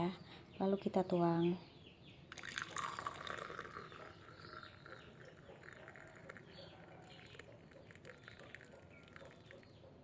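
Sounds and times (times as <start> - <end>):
water pouring into a glass: 2.3 - 9.7.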